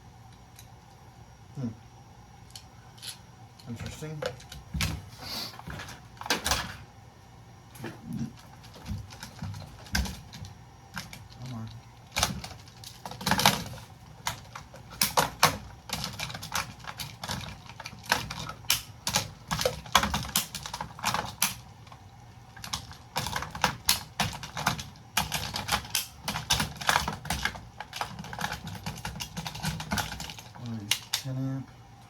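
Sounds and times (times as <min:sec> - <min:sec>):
breaker parts clicking and clacking: 0:07.8 - 0:31.4.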